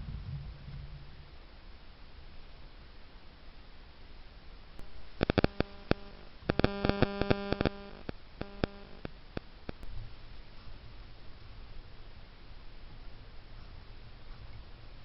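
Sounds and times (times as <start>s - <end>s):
steady electrical buzz: 0.0s - 15.0s
electrical clicking: 4.8s - 9.9s.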